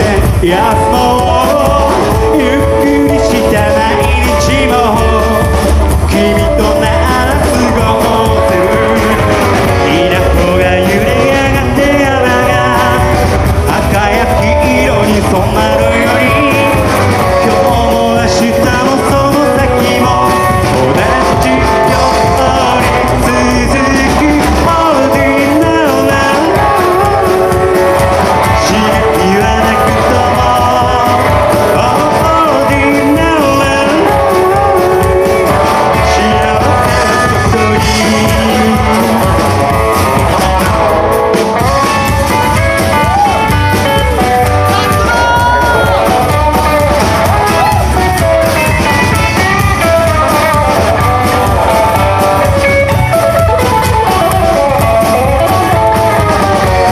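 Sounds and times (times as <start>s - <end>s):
rockabilly band playing: 0.0s - 56.9s.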